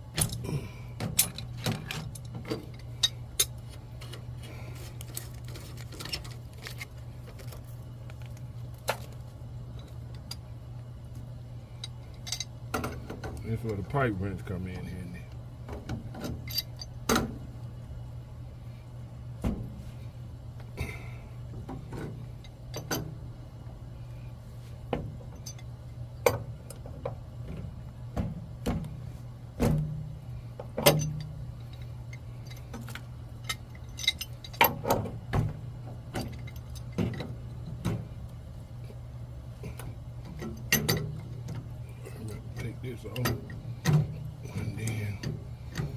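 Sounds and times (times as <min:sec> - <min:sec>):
steady low hum: 0:00.0 - 0:45.9
pipe wrench clinking on metal: 0:16.2 - 0:17.0, 0:25.3 - 0:26.4, 0:33.4 - 0:35.0, 0:36.1 - 0:37.2.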